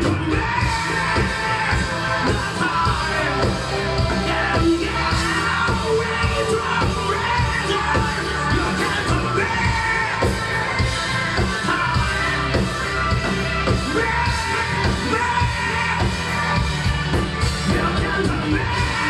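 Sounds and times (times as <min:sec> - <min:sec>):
person singing: 0:00.0 - 0:19.0
rock band playing live: 0:00.0 - 0:19.0
steady drum beat: 0:00.0 - 0:19.0.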